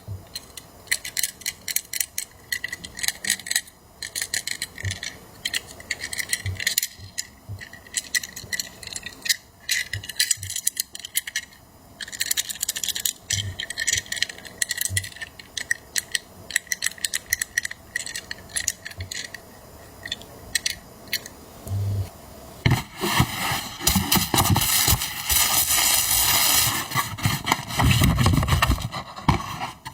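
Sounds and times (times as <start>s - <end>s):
toy vehicles clicking and rattling: 0.3s - 21.3s, 23.9s - 27.0s.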